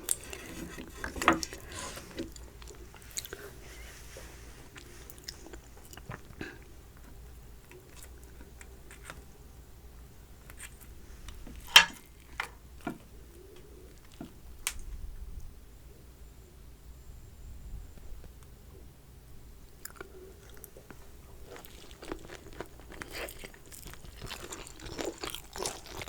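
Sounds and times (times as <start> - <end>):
dumpling being bitten and chewed: 4.7 - 9.4, 19.7 - 26.0.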